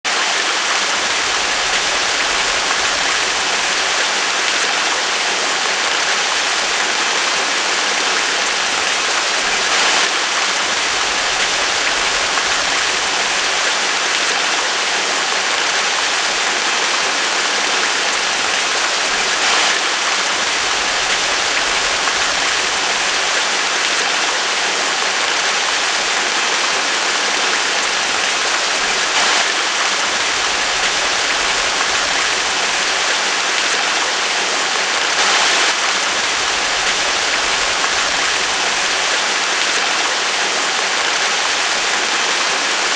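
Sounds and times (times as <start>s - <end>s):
waterfall rushing: 0.0s - 42.9s.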